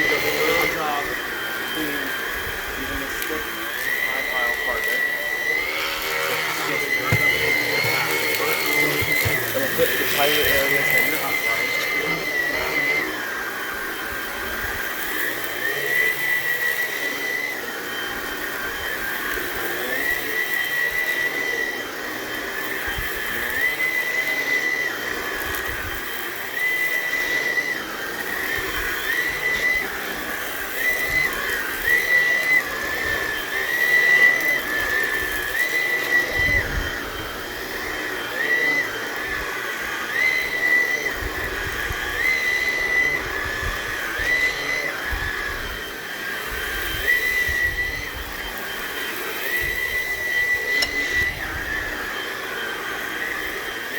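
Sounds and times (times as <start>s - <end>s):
vacuum cleaner motor whine: 0.0s - 53.9s.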